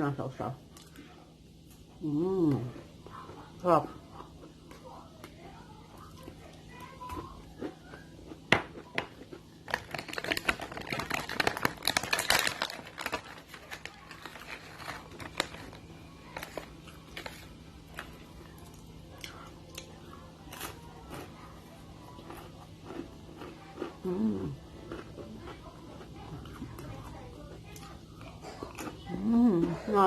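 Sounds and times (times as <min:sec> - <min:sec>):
snack crackers crunching: 0:06.0 - 0:29.8.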